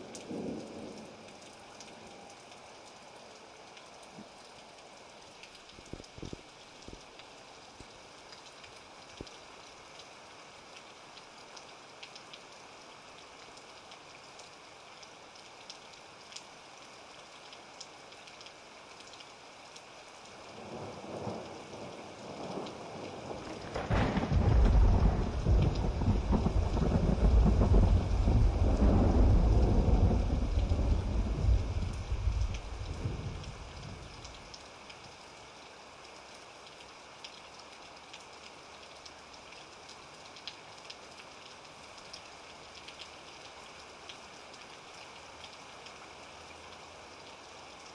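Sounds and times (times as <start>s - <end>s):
steady rain falling: 0.0s - 47.9s
thunder rumbling: 22.3s - 34.4s.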